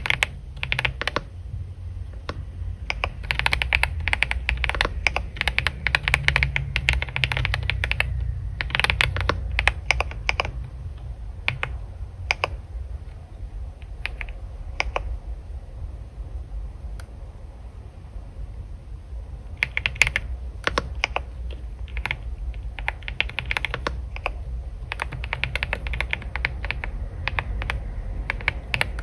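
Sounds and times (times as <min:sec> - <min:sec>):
keyboard key clicks: 0:00.0 - 0:01.3, 0:02.2 - 0:10.8, 0:11.4 - 0:12.6, 0:13.8 - 0:15.2, 0:19.6 - 0:29.0
low steady hum: 0:00.0 - 0:29.0.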